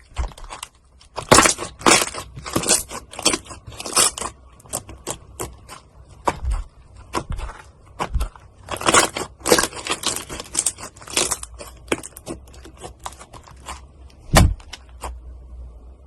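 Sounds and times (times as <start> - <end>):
slime crackling and squelching: 0.0 - 15.2
heavy thud: 14.2 - 14.7.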